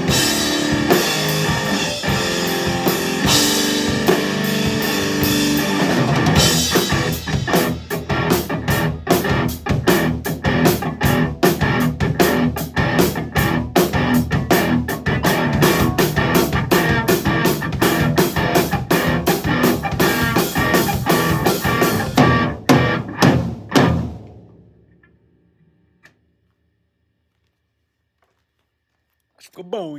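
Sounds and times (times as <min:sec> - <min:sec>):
guitar and drum music: 0:00.0 - 0:24.9.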